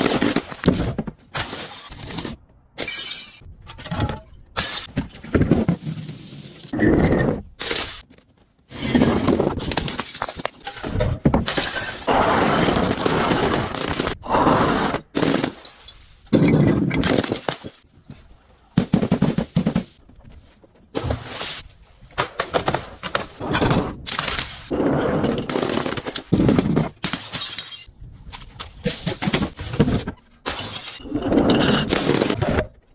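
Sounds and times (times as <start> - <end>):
glass bottles breaking: 2.8 - 3.5, 9.6 - 12.1.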